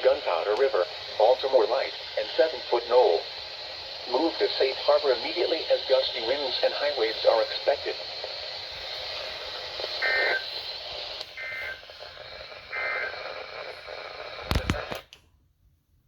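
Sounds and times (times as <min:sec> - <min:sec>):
radio hiss: 0:00.0 - 0:15.1
warbling two-tone data bursts: 0:09.9 - 0:10.6, 0:11.4 - 0:12.0, 0:12.6 - 0:13.4
sharp clicks: 0:14.4 - 0:15.3.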